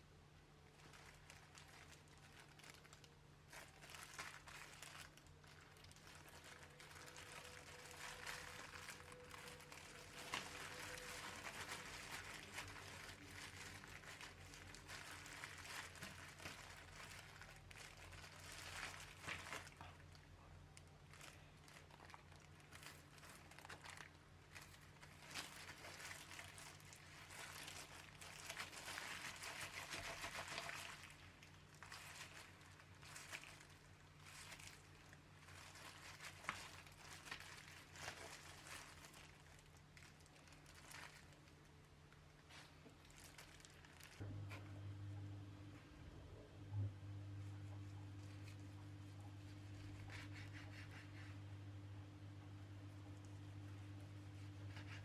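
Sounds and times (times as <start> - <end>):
crinkling and rustling: 0.7 - 51.8, 53.0 - 55.0
steady low hum: 4.8 - 55.0.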